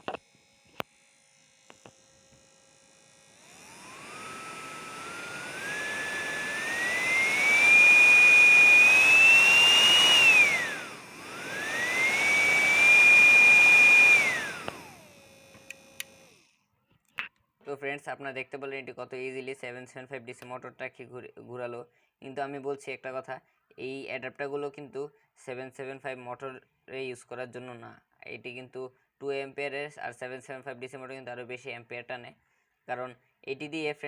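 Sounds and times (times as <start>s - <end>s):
electric motor whining: 0.0s - 16.6s.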